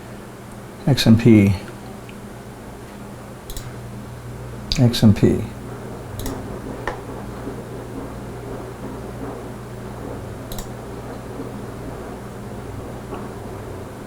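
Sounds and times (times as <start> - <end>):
computer fans humming: 0.0 - 14.0
short clicks: 3.5 - 3.8, 6.2 - 7.0, 10.5 - 10.7.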